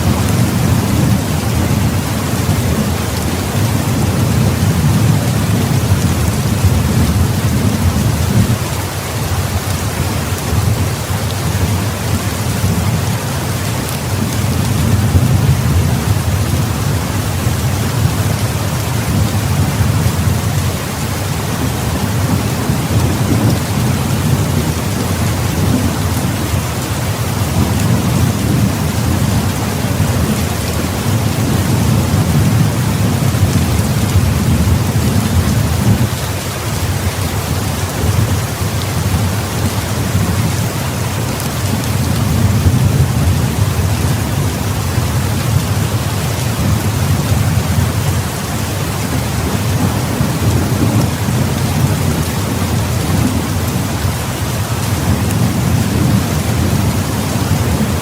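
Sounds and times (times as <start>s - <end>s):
heavy rain: 0.0s - 58.0s
rolling thunder: 13.8s - 36.2s, 49.0s - 58.0s.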